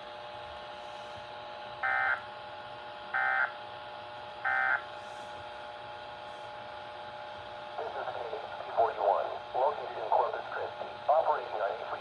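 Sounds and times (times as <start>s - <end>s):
faint radio hiss: 7.8s - 12.0s.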